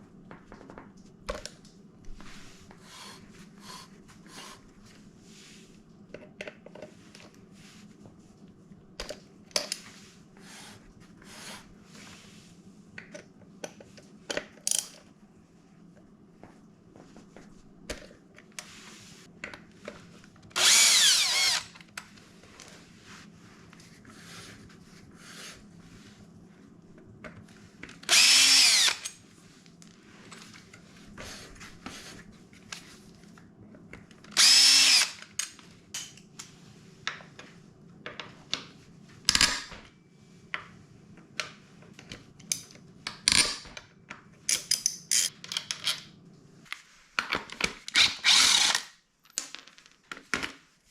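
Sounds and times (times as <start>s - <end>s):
power drill running: 20.6s - 21.8s, 28.1s - 29.1s, 34.4s - 35.2s, 48.0s - 48.9s
clinks of tools and parts: 44.5s - 46.1s.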